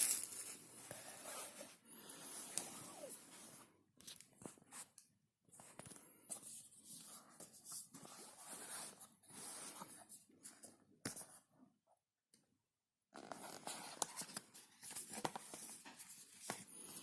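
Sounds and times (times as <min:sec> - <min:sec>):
packaging rustling and scraping: 0:00.0 - 0:01.8.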